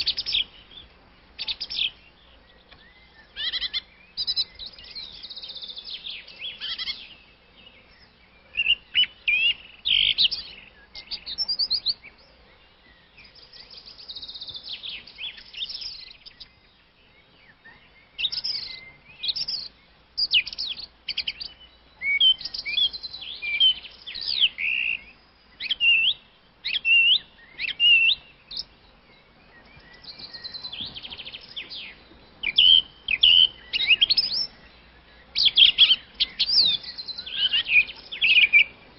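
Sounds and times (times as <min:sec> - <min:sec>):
small birds chirping: 0:00.0 - 0:38.9.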